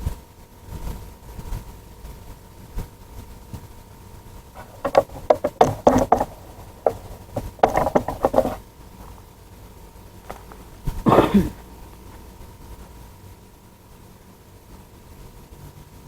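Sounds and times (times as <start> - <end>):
irregular knocking and rattling: 4.6 - 8.6.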